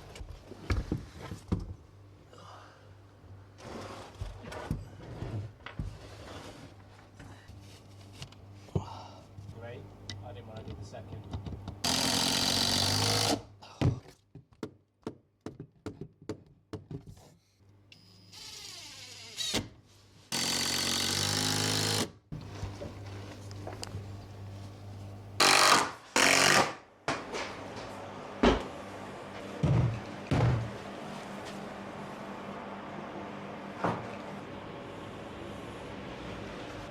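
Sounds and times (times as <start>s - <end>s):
power drill driving screws: 11.8s - 13.4s, 18.3s - 19.7s, 20.3s - 24.6s, 25.4s - 26.8s.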